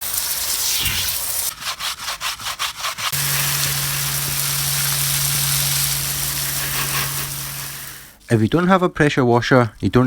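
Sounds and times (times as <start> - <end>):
water spray hissing: 0.0 - 1.6, 3.1 - 8.4
stiff brush scrubbing: 0.2 - 10.0
low hum: 3.2 - 8.2.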